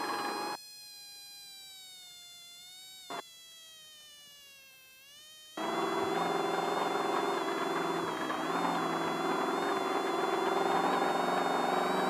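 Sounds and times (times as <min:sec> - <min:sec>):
race car engine buzzing: 0:05.6 - 0:12.0.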